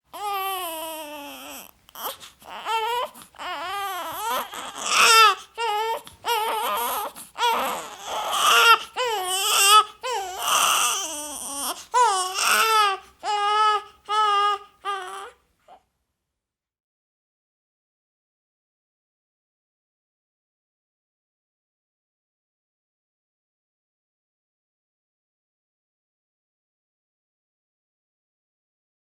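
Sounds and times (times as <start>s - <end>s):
baby crying: 0.1s - 15.8s.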